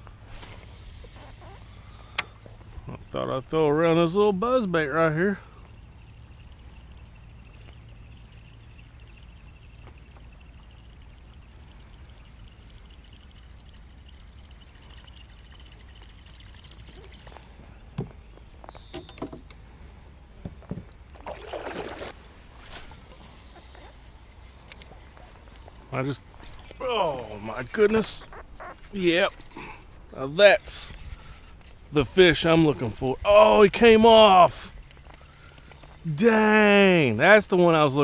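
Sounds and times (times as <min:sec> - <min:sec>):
steady low water background: 0:00.0 - 0:04.0, 0:05.4 - 0:36.0
water splashes: 0:21.1 - 0:22.3.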